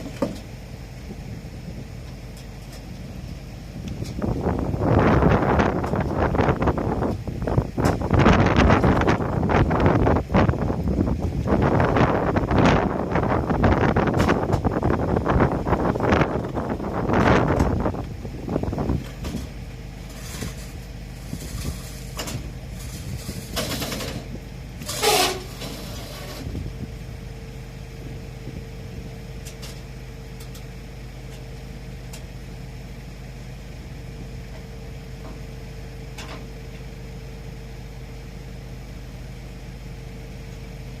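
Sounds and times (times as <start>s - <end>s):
diesel engine idling: 0.0s - 41.0s
falling squeal: 24.9s - 26.5s.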